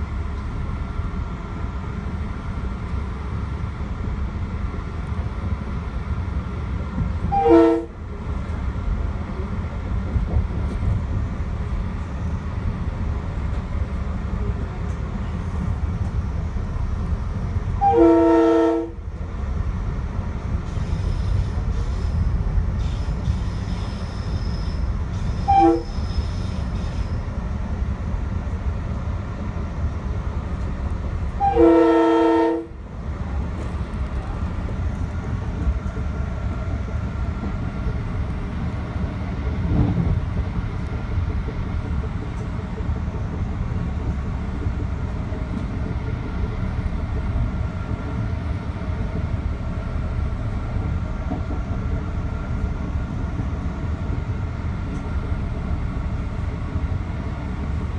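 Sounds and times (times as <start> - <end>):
train wheels rumbling on track: 0.0 - 57.9
train horn: 7.2 - 8.0, 17.8 - 19.0, 25.3 - 26.2, 31.3 - 32.8.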